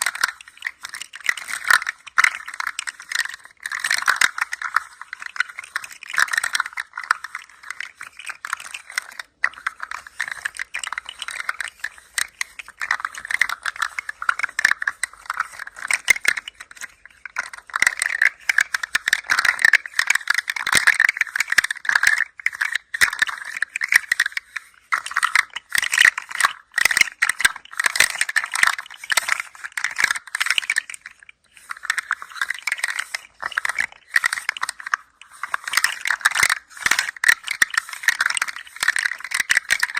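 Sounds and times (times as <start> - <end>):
toy rattling: 0.0 - 39.9.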